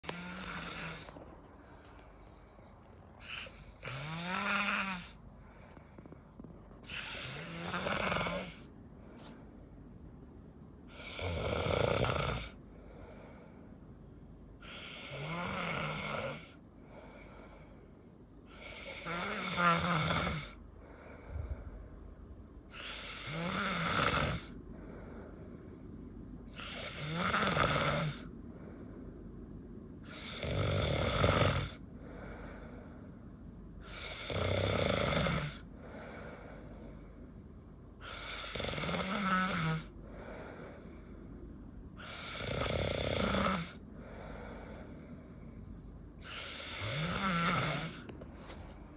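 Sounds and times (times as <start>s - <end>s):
person snoring: 0.0s - 1.3s, 3.2s - 5.2s, 6.8s - 8.7s, 10.9s - 12.6s, 14.6s - 16.5s, 18.5s - 20.6s, 22.7s - 24.6s, 26.5s - 28.3s, 33.9s - 36.3s, 38.0s - 39.9s, 42.0s - 43.8s, 46.2s - 48.1s.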